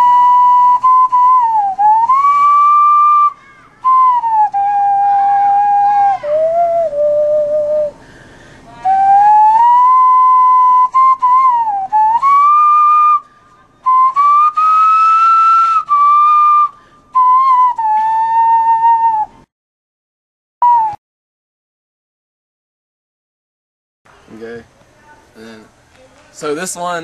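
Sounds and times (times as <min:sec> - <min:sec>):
hand whistling melody: 0:00.0 - 0:08.0, 0:08.8 - 0:19.5, 0:20.6 - 0:21.0.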